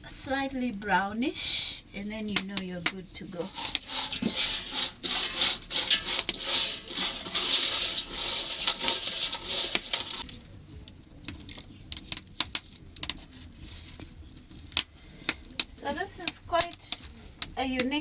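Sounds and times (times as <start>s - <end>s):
fish sizzling in a pan: 3.3s - 10.3s.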